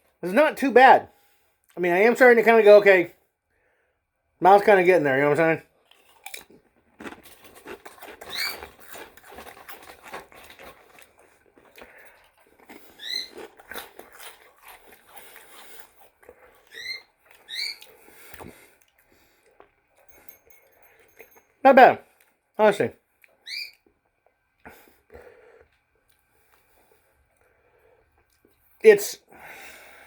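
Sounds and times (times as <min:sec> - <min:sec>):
chewing crunchy chips: 0:05.7 - 0:21.3
pet birds chirping: 0:12.8 - 0:13.5, 0:16.7 - 0:18.0, 0:23.4 - 0:23.8.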